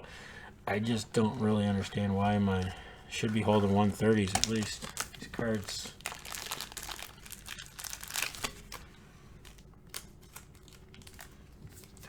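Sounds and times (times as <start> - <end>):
plastic sleeve crinkling: 0.8 - 12.0.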